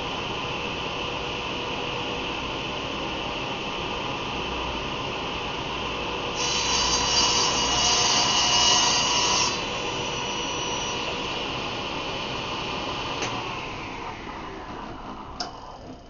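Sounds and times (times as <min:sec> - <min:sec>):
saw blade cutting wood: 0:06.4 - 0:11.1
power saw running: 0:09.3 - 0:11.5, 0:12.6 - 0:16.0.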